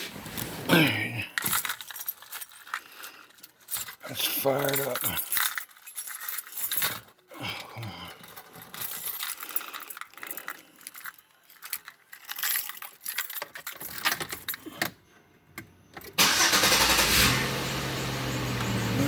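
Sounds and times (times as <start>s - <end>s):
keys rattling in ignition: 0.1s - 19.0s
car engine cranking and idling: 16.0s - 19.0s.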